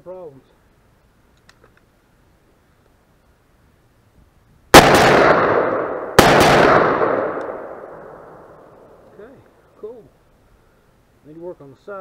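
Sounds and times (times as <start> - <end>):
rifle shots echoing: 4.7 - 9.0.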